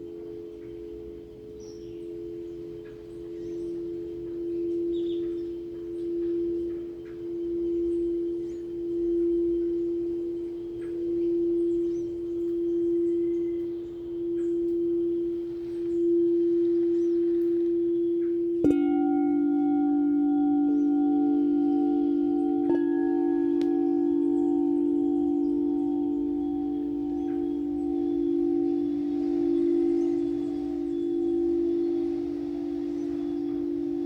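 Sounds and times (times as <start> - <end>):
lower bowl struck: 0.0 - 34.0
singing bowl ringing: 0.0 - 34.0.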